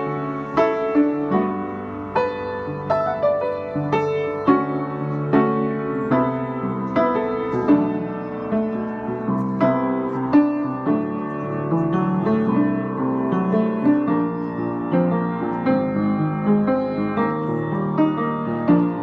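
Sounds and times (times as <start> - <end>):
piano playing: 0.0 - 19.0.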